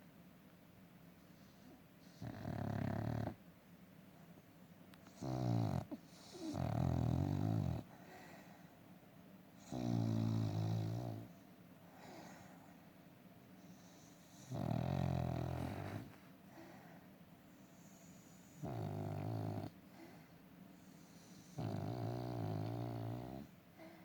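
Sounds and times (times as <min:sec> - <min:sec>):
dog snoring: 0:01.4 - 0:03.4, 0:05.1 - 0:08.3, 0:09.6 - 0:11.4, 0:13.6 - 0:16.1, 0:17.7 - 0:24.0.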